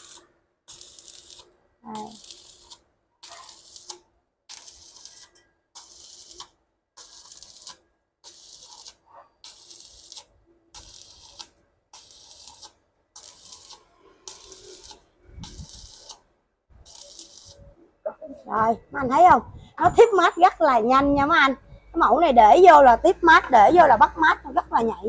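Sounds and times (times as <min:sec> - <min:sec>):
welding arc crackling hiss: 0:00.0 - 0:16.2, 0:16.8 - 0:17.6.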